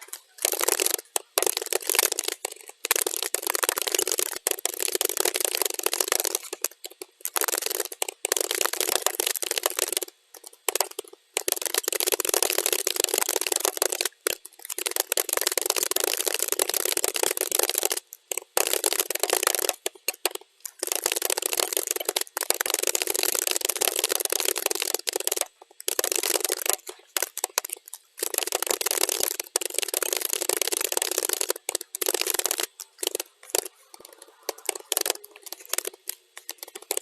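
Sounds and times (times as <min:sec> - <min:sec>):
rapid keyboard typing: 0:00.0 - 0:37.0.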